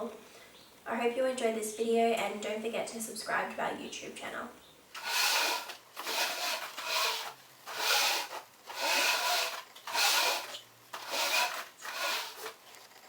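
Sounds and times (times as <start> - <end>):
rubbing or scraping strokes: 5.0 - 13.0.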